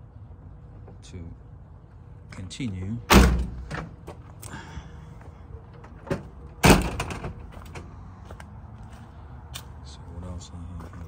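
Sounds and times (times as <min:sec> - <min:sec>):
door slamming: 0:03.1 - 0:04.0, 0:06.1 - 0:07.5.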